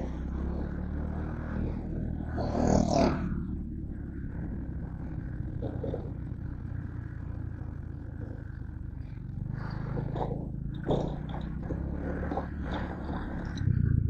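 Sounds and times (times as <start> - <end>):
low engine rumble: 0.0 - 14.0.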